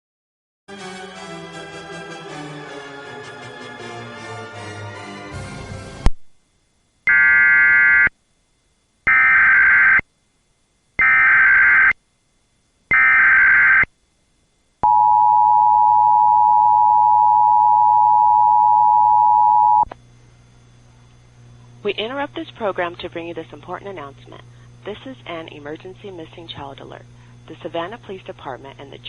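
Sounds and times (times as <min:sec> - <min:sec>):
alert data bursts: 0:07.1 - 0:08.1, 0:09.1 - 0:10.0, 0:11.0 - 0:11.9, 0:12.9 - 0:13.9
two-tone attention signal: 0:14.8 - 0:19.8.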